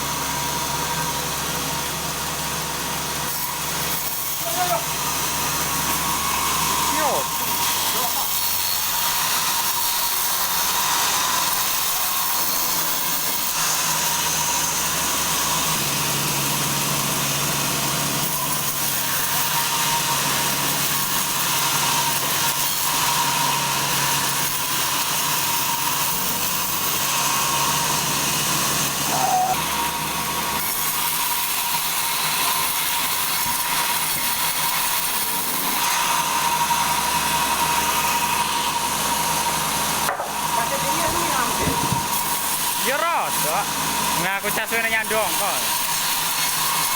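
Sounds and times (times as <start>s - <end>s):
sawmill saw cutting log: 0.0s - 46.9s.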